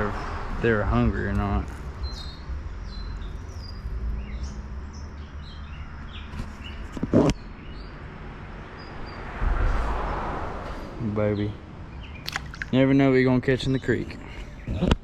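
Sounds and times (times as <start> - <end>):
small birds chirping: 0.0 - 10.3, 11.0 - 15.0
loud thump: 9.4 - 11.0.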